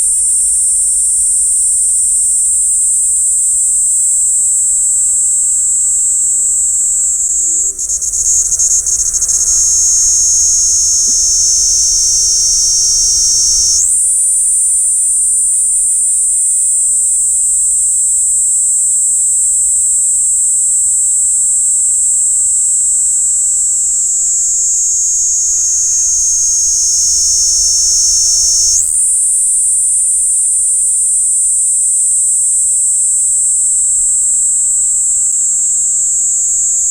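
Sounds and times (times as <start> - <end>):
cicada buzzing: 0.0 - 36.9.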